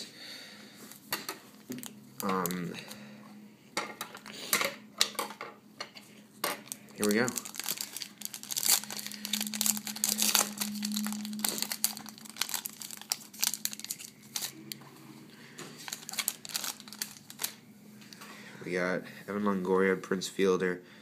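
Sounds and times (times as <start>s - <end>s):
low steady hum: 0.0s - 20.0s
wrapper crinkling: 6.6s - 14.7s, 15.8s - 17.6s.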